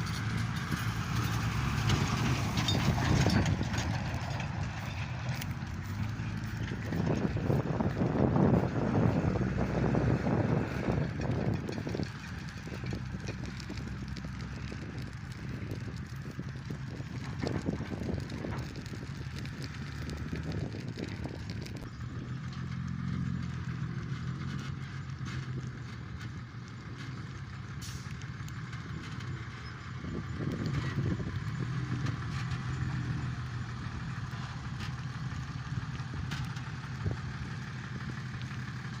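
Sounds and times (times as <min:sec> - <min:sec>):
excavator engine running: 0:00.0 - 0:39.0.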